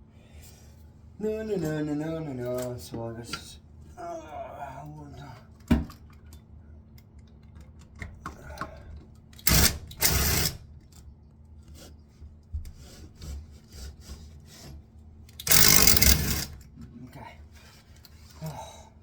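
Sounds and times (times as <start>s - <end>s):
loud rasping bursts: 9.5s - 10.6s, 15.5s - 16.6s.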